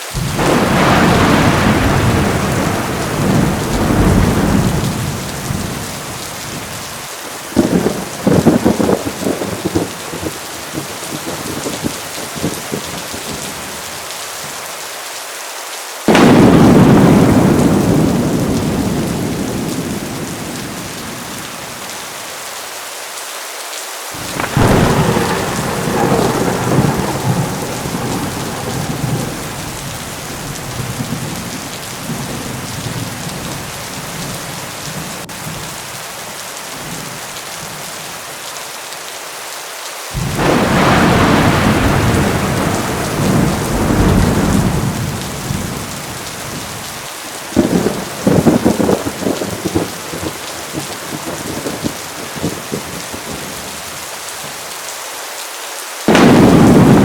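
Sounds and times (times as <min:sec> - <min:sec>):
heavy rain pouring: 0:00.0 - 0:57.0
crackling thunder: 0:00.1 - 0:13.8, 0:16.1 - 0:22.1, 0:24.2 - 0:36.0, 0:40.2 - 0:54.6, 0:56.1 - 0:57.0
loud thunder clap: 0:00.2 - 0:06.6, 0:07.6 - 0:10.3, 0:16.1 - 0:21.5, 0:24.2 - 0:34.4, 0:40.2 - 0:46.9, 0:47.6 - 0:53.4, 0:56.1 - 0:57.0
thunder rumbling: 0:00.2 - 0:06.9, 0:07.6 - 0:13.7, 0:16.1 - 0:22.0, 0:24.2 - 0:35.9, 0:40.2 - 0:53.7, 0:56.1 - 0:57.0.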